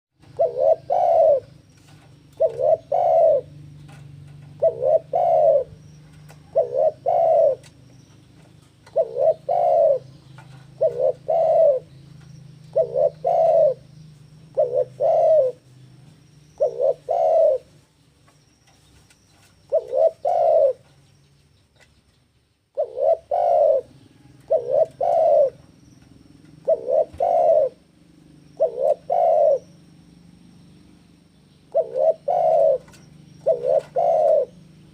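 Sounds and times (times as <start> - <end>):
dove cooing: 0.2 - 17.8, 19.4 - 20.9, 22.8 - 30.0, 31.7 - 34.9.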